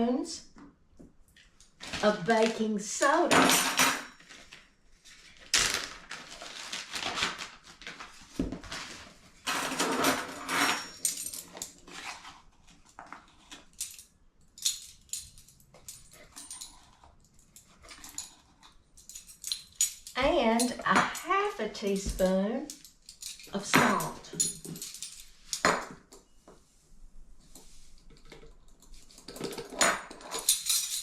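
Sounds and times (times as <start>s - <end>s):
measuring spoons clinking and scraping: 9.5s - 26.4s, 27.6s - 31.0s.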